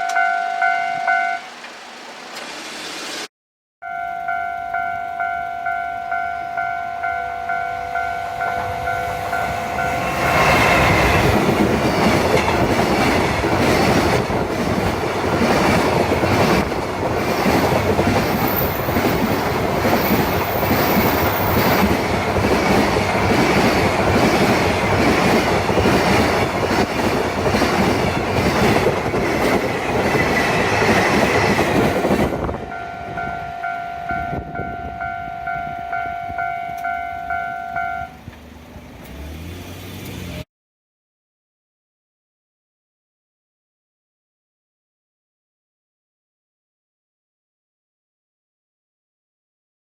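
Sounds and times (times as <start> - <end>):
level crossing bell ringing: 0.0 - 1.5, 3.8 - 10.0, 32.6 - 38.2
freight train passing: 0.0 - 40.4.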